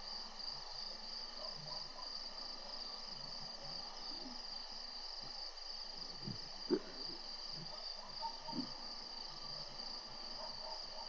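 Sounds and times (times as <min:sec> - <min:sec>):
night insects trilling: 0:00.0 - 0:11.0.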